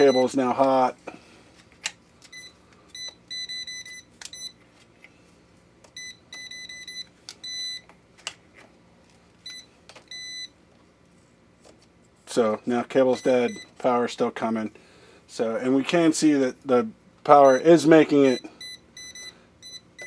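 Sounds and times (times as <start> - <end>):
voltage detector beeping: 2.3 - 4.6, 6.0 - 7.8, 17.4 - 20.0.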